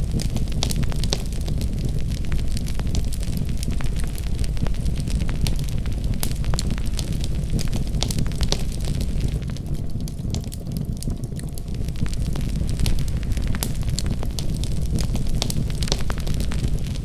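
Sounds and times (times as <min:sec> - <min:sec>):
fire crackling and popping: 0:00.0 - 0:17.0.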